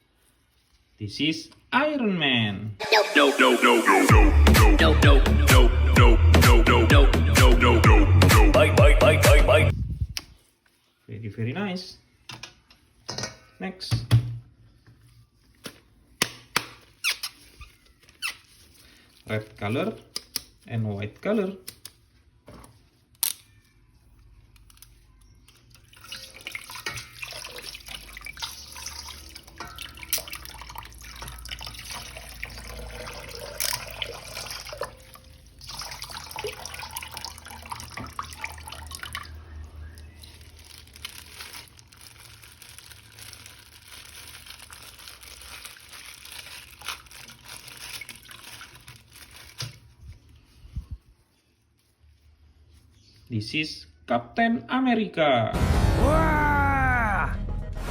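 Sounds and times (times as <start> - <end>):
tap water splashing: 25.8 - 39.3.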